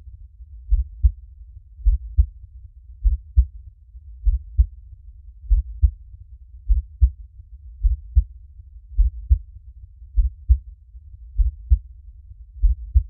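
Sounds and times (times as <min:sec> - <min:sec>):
faint low rumble: 0:00.0 - 0:13.0
heartbeat lub-dub thumps: 0:00.7 - 0:01.2, 0:01.8 - 0:02.4, 0:03.0 - 0:03.5, 0:04.2 - 0:04.7, 0:05.5 - 0:06.0, 0:06.7 - 0:07.2, 0:07.8 - 0:08.3, 0:09.0 - 0:09.5, 0:10.2 - 0:10.6, 0:11.4 - 0:11.8, 0:12.6 - 0:13.0.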